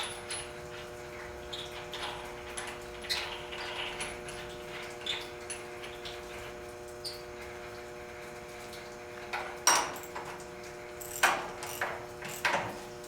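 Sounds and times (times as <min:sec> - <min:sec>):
electrical-mechanical hum: 0:00.0 - 0:13.0
short high metal squeaks: 0:03.0 - 0:05.3.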